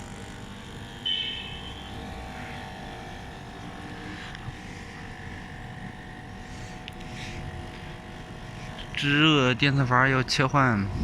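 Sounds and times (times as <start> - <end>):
air conditioner unit running: 0.0 - 11.0
short high-pitched beep: 1.0 - 1.9.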